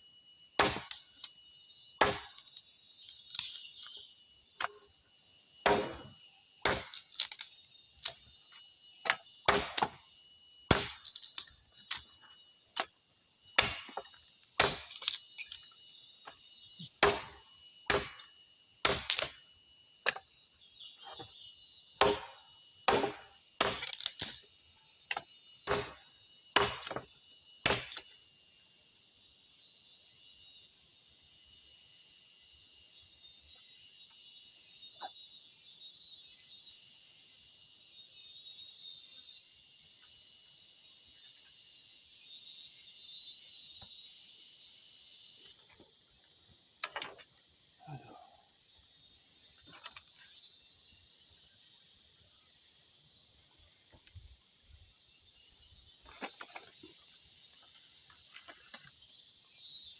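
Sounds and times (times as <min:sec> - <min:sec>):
blade chopping wood: 0:00.6 - 0:04.0, 0:04.6 - 0:04.9, 0:05.6 - 0:08.3, 0:09.0 - 0:10.0, 0:10.7 - 0:15.6, 0:16.2 - 0:20.3, 0:22.0 - 0:28.1.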